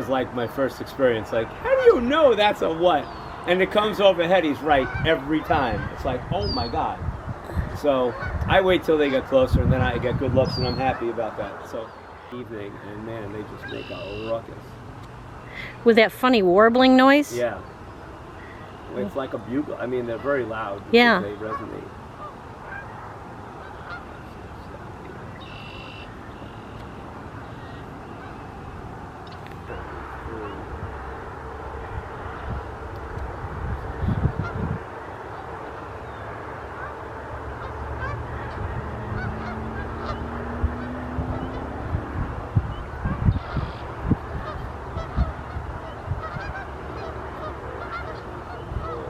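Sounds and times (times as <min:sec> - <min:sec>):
geese honking: 0:00.0 - 0:07.0, 0:07.8 - 0:14.8, 0:15.4 - 0:49.0
outdoor background noise: 0:00.0 - 0:49.0
high bird call: 0:04.5 - 0:06.9, 0:13.5 - 0:14.5, 0:17.4 - 0:30.7, 0:42.7 - 0:49.0.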